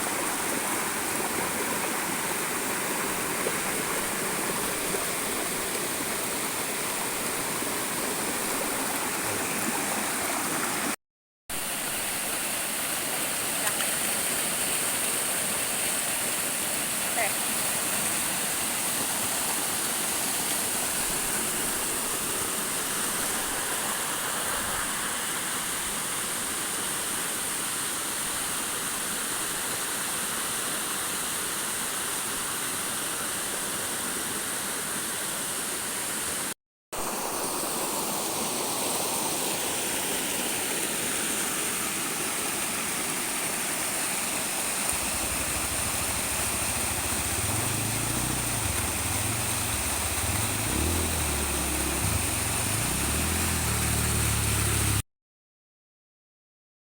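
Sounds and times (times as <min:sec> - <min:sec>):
waterfall rushing: 0:00.0 - 0:11.0, 0:37.0 - 0:55.0
low engine hum: 0:44.9 - 0:55.0.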